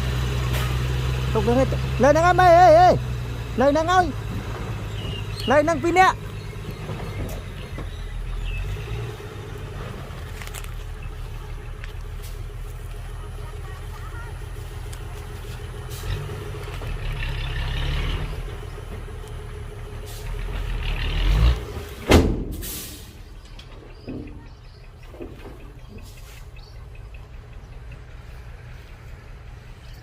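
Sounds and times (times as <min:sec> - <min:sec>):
heavy diesel engine running: 0:00.0 - 0:30.0
sharp bang: 0:22.0 - 0:23.2
hiss of air: 0:22.5 - 0:23.2.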